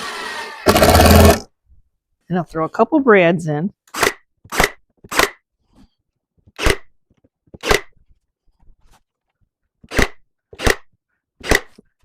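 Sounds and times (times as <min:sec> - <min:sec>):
brad nailer firing: 0:00.0 - 0:01.4, 0:03.9 - 0:05.4, 0:06.6 - 0:06.9, 0:07.6 - 0:07.9, 0:09.9 - 0:11.8.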